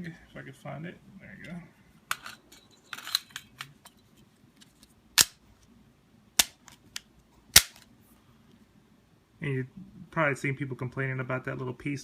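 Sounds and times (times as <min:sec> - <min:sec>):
sharp magazine clicks: 0:05.2 - 0:05.4, 0:07.6 - 0:07.8.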